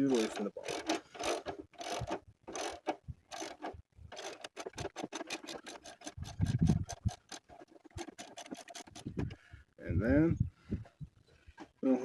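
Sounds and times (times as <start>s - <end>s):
ratchet wrench clicking: 0.6s - 7.4s.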